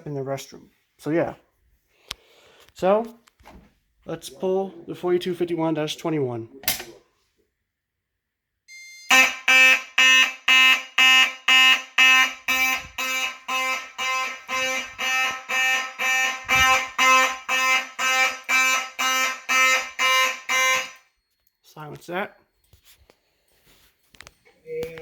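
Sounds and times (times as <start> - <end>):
fire alarm horn blasts: 8.7 - 22.0.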